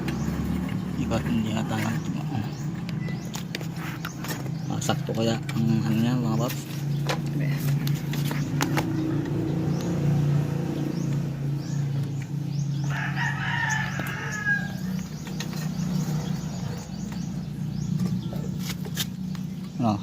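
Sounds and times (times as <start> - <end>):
rooster crowing: 12.8 - 15.1.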